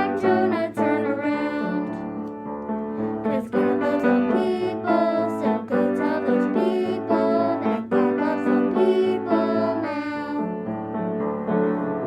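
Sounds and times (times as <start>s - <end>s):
two voices singing: 0.0s - 2.3s, 3.2s - 10.6s
piano accompaniment: 0.0s - 12.0s.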